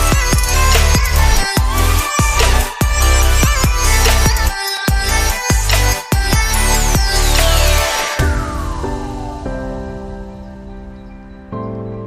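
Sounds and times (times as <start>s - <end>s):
soft electronic chords: 0.0s - 12.0s
falling synth sweep: 6.4s - 11.5s.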